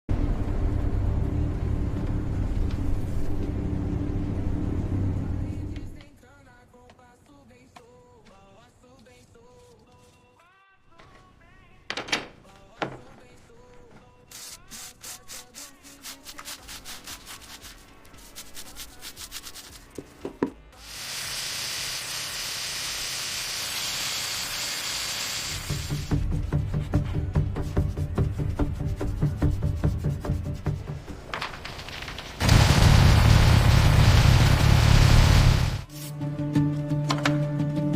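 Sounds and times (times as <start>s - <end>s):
engine low rumble: 0.1s - 6.1s
faint music: 0.1s - 20.8s
quick rubbing strokes: 14.3s - 20.0s
steady hiss: 20.8s - 26.1s.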